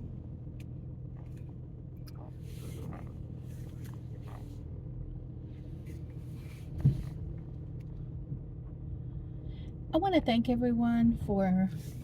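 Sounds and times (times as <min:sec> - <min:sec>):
car engine humming: 0:00.0 - 0:12.0.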